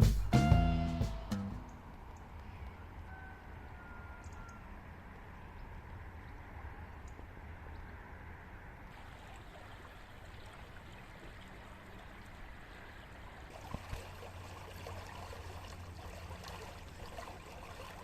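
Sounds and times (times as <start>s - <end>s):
water trickling and lapping: 8.9s - 18.0s.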